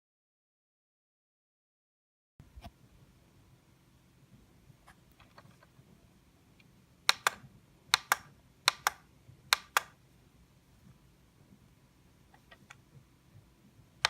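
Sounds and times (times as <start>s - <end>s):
switches clicking: 7.1s - 10.0s.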